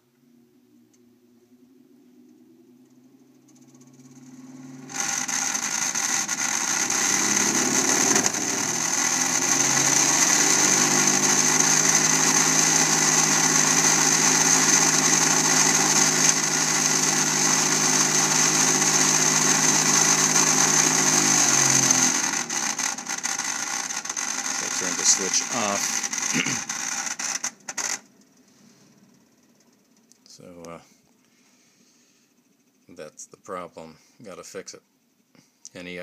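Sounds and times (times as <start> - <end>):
furnace motor humming and whining: 2.8 - 28.1.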